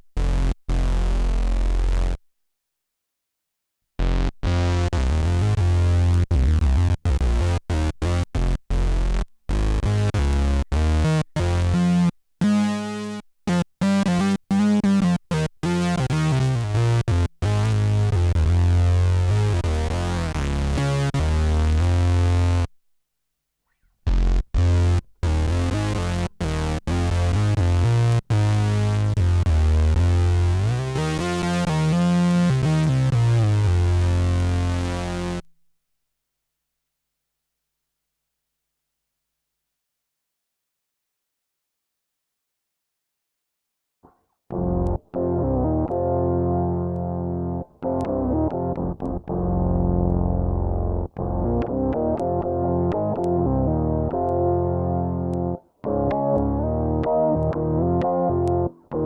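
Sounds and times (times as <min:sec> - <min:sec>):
synth bass riff: 0:00.0 - 0:02.2, 0:04.0 - 0:22.7, 0:24.1 - 0:35.4, 0:44.5 - 0:59.0.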